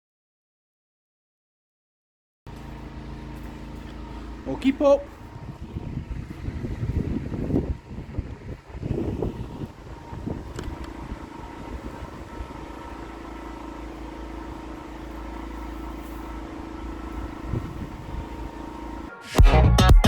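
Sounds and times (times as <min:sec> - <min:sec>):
engine running: 0:02.5 - 0:20.0.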